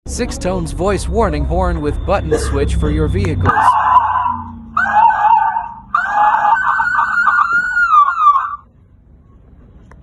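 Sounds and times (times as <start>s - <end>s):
truck warning horn wailing: 1.0s - 8.7s.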